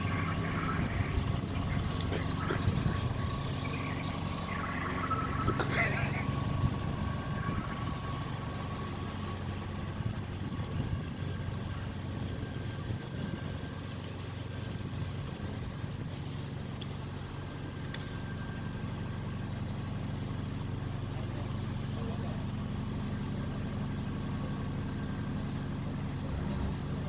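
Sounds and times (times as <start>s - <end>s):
reversing alarm tone: 0.0s - 16.2s
bus diesel engine running: 0.0s - 27.0s.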